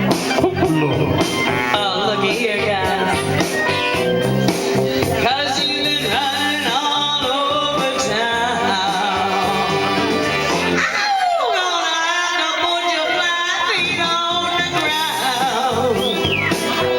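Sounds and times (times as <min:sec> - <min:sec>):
person singing: 0:00.0 - 0:04.1, 0:05.0 - 0:16.9
band playing low notes: 0:00.0 - 0:10.8.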